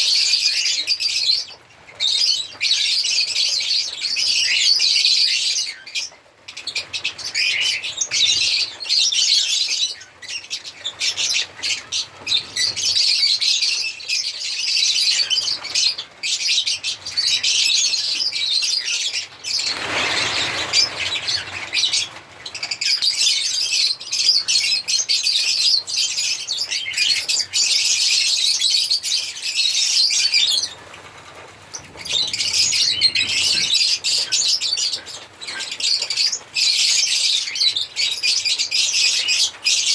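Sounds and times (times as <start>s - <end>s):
lovebirds chirping: 0.0s - 39.9s
wings flapping: 19.2s - 22.8s, 30.5s - 34.4s.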